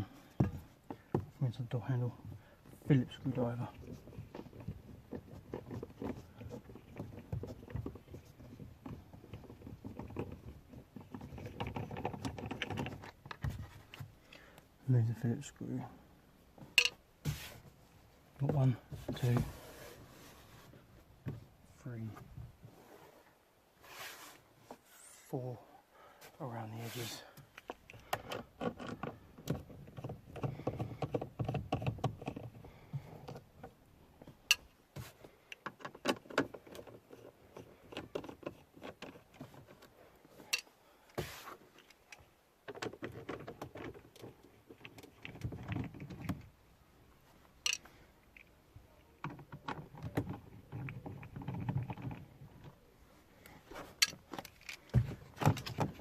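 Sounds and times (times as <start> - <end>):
plastic trim clicks and rattles: 47.6 - 48.5.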